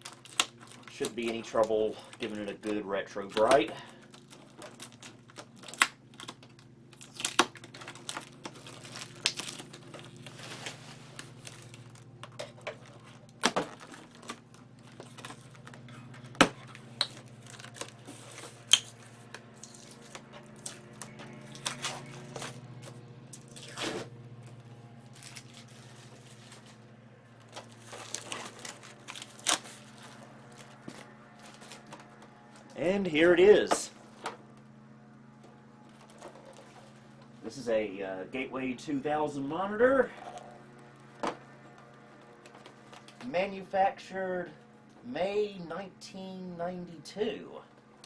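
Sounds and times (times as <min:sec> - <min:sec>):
plastic wrap crinkling: 0:00.0 - 0:22.7, 0:25.1 - 0:26.8, 0:27.4 - 0:32.2
tape tearing: 0:00.0 - 0:26.8, 0:27.4 - 0:32.7
steady low hum: 0:00.0 - 0:48.0.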